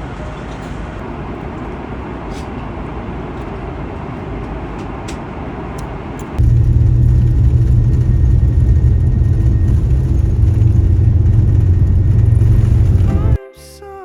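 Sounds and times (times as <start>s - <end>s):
vehicle cabin rumble: 6.2s - 13.4s.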